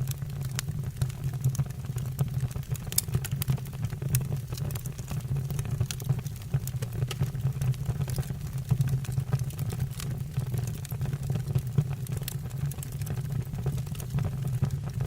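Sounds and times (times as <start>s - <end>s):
fire rumbling: 0.0s - 15.0s
logs crackling and popping: 0.0s - 15.0s.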